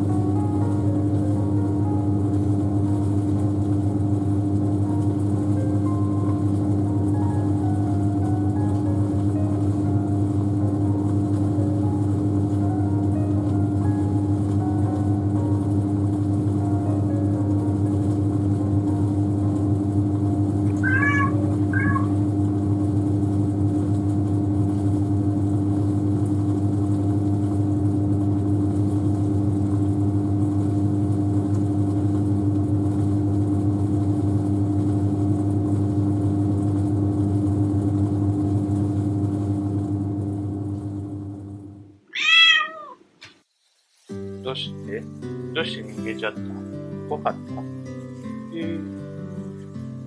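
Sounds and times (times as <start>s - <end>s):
washing machine humming: 0.0s - 50.0s
cat meowing: 20.7s - 22.2s, 42.1s - 43.1s.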